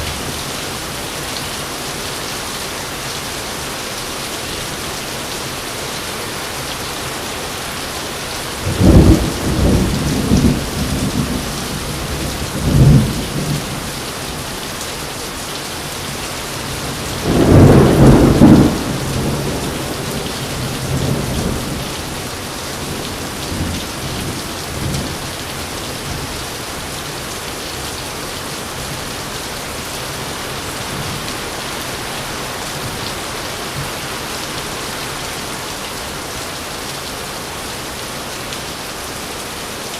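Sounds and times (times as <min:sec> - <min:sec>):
heavy rain: 0:00.0 - 0:39.9
thunder rumbling and cracking: 0:08.6 - 0:13.9, 0:16.8 - 0:22.2.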